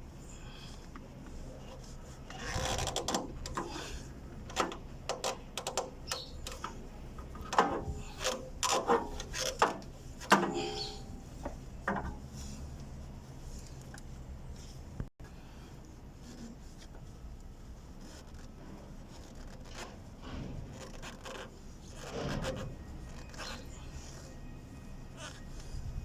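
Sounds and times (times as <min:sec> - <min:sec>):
low steady hum: 0:00.0 - 0:19.4
tools clicking and scraping on engine: 0:00.1 - 0:12.9.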